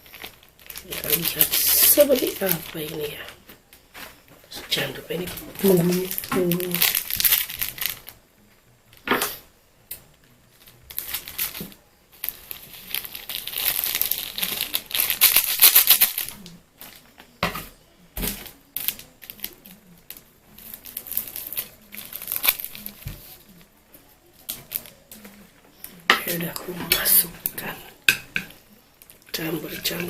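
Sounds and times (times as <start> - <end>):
plastic sachets crinkling: 0.0 - 8.2, 10.5 - 17.3, 18.2 - 23.7, 24.3 - 30.0.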